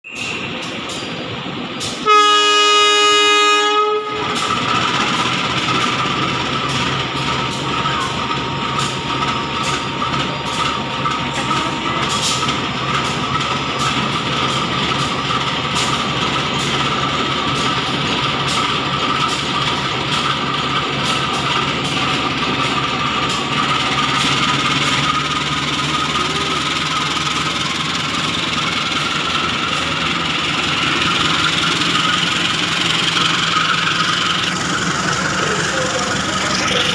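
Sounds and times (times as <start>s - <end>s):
vehicle horn blast: 2.0s - 4.4s.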